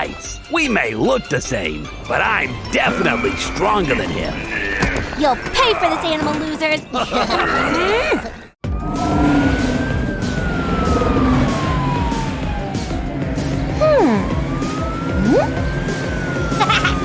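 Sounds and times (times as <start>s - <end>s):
background music: 0.0s - 5.2s, 8.7s - 17.0s
cartoon police siren wailing: 8.7s - 17.0s
falling swoop: 15.0s - 15.6s.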